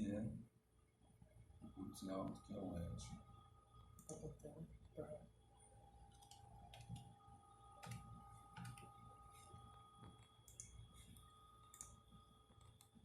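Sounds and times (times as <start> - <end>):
faint high whine: 0.0 - 13.0
computer mouse clicks: 6.1 - 7.1, 7.8 - 8.9, 10.1 - 12.0.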